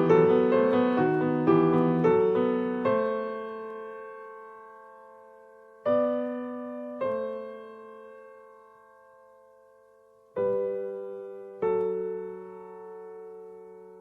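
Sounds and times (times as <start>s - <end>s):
soft piano chords: 0.0s - 14.0s.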